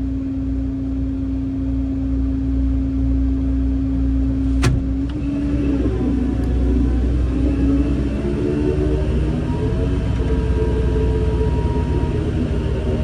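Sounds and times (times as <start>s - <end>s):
diesel engine rumbling: 0.0s - 13.0s
sharp click: 4.6s - 4.9s.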